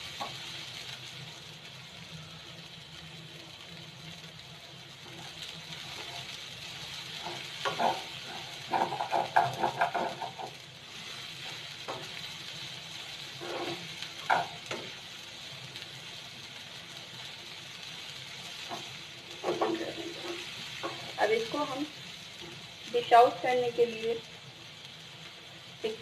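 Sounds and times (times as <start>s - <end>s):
vegetables sizzling in oil: 0.0s - 26.0s
utensil knocking against pan: 7.6s - 8.0s, 8.7s - 10.5s.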